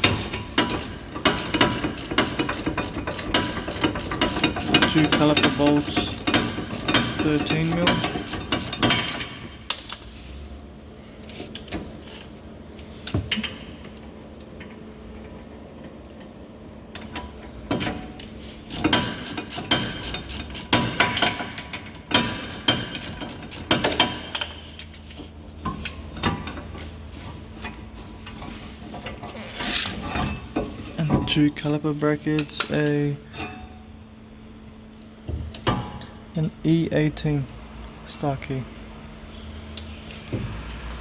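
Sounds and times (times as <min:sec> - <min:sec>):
metal tools clinking on bolts: 0:00.0 - 0:10.0, 0:31.0 - 0:33.8.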